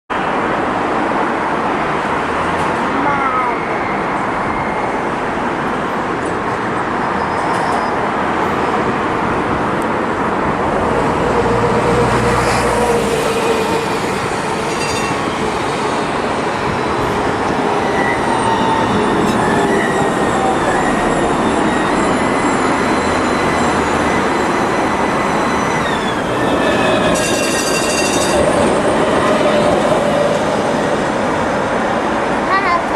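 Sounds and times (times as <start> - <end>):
tram rolling rumble: 0.1 - 32.9.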